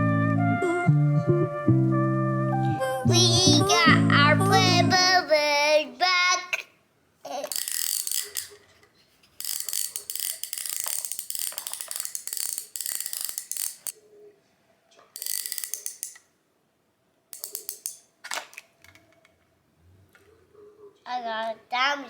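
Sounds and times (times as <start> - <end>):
toy gear ratcheting clicks: 7.3 - 8.7, 9.4 - 14.0, 15.2 - 16.3, 17.4 - 18.1.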